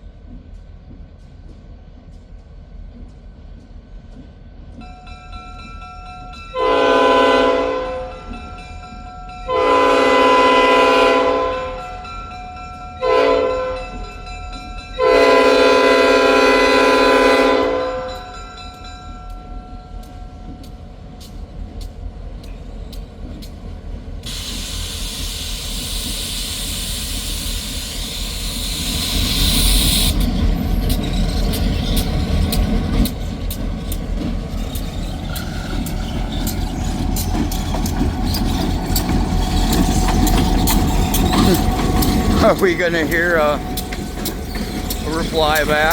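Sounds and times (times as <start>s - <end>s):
train air horn blasts: 6.6s - 8.2s, 9.5s - 11.8s, 13.0s - 13.8s, 15.0s - 18.3s, 39.7s - 45.9s
wheels clicking over rail joints: 18.4s - 45.9s
diesel engine rumble: 24.3s - 45.9s.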